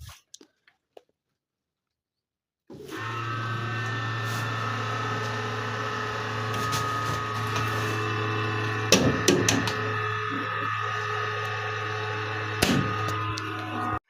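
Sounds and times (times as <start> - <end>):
cooling fans running: 3.0 - 14.0
electrical hum: 3.0 - 14.0
high whining tones: 3.3 - 14.0.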